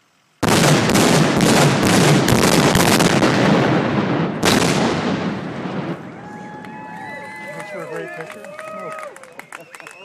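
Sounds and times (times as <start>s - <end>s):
sharp blast: 0.4s - 6.2s
explosive blast crackling: 0.4s - 6.4s.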